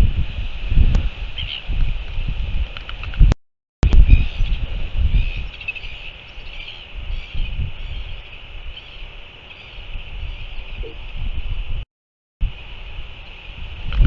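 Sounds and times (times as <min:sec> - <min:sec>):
wind buffeting microphone: 0:00.0 - 0:11.8, 0:12.4 - 0:14.0
small birds chirping: 0:01.4 - 0:01.8, 0:03.9 - 0:11.6.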